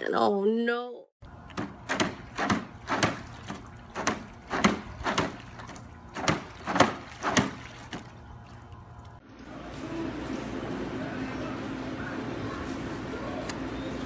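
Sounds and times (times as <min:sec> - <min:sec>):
low steady hum: 0:01.2 - 0:14.0
sharp knocks: 0:01.6 - 0:05.4.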